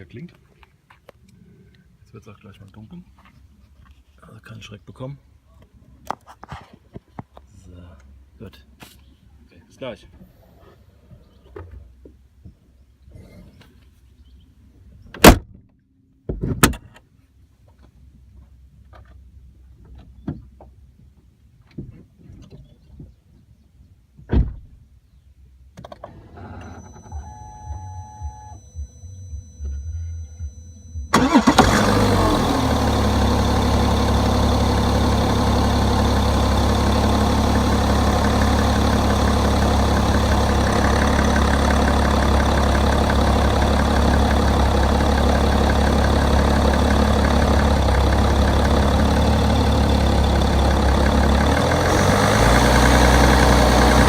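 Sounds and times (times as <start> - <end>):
faint electronic whine: 26.4 - 31.2
diesel engine idling: 30.1 - 54.0
diesel engine cranking and firing: 31.0 - 54.0.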